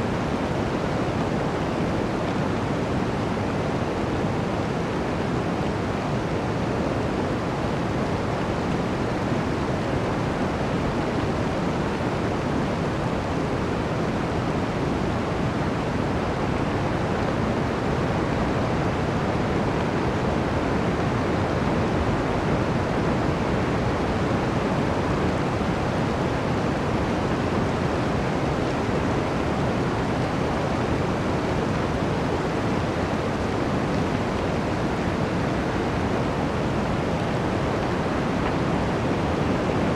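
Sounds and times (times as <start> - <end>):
wind blowing through forest: 0.0 - 39.9.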